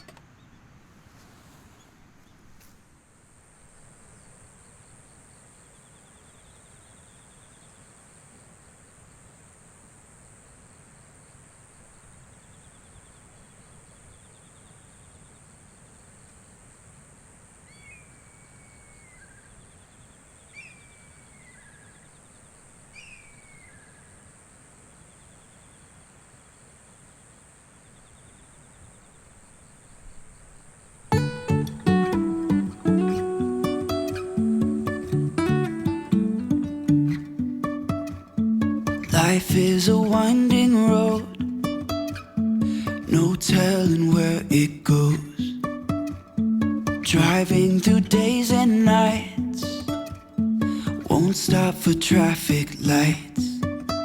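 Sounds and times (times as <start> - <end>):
low hiss: 0.0 - 54.0
bird falling calls: 17.7 - 19.6, 20.5 - 22.1, 22.9 - 24.2
pulsing insect chirps: 27.1 - 54.0.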